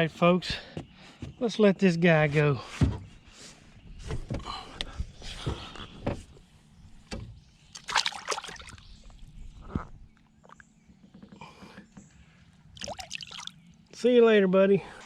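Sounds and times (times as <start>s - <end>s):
water splashing and sloshing: 7.7s - 10.6s, 12.7s - 13.9s.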